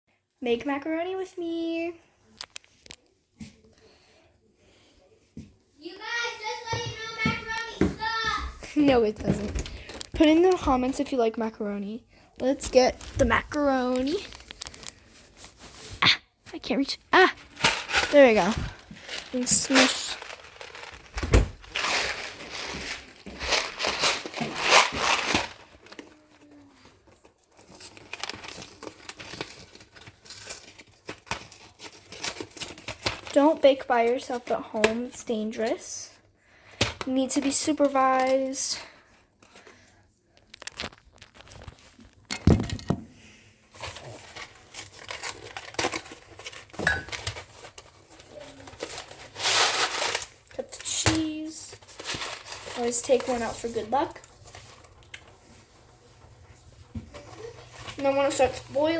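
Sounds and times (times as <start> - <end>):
packaging crinkling: 12.6 - 15.9, 17.3 - 33.4, 40.3 - 42.4, 43.7 - 51.0, 51.7 - 55.6.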